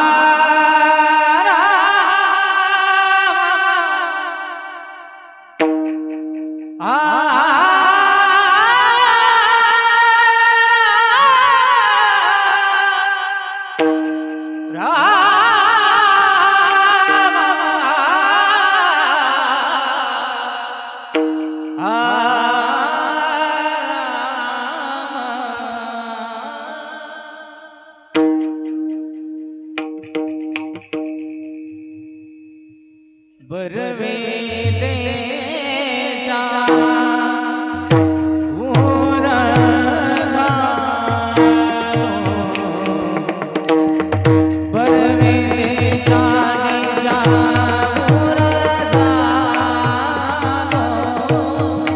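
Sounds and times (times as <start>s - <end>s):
percussive strikes: 5.6s - 8.1s, 13.8s - 16.1s, 21.1s - 22.4s, 28.2s - 32.8s, 36.7s - 51.9s
ornamented melodic line: 36.8s - 51.9s.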